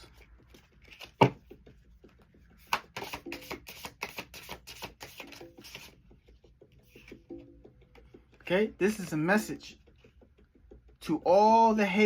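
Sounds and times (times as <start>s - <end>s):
cards being shuffled by hand: 0.0s - 7.4s.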